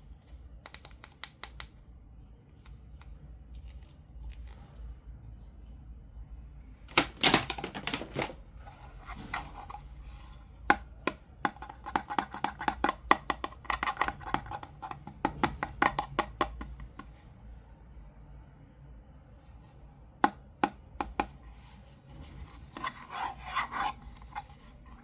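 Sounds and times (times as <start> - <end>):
packaging rustling: 6.9 - 8.4.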